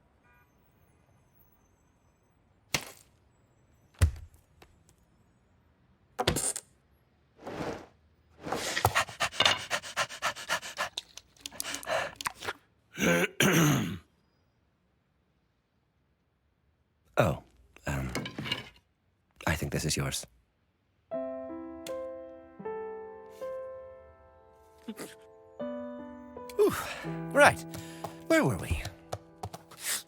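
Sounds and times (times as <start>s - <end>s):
breathy cry falling in pitch: 26.6s - 27.6s.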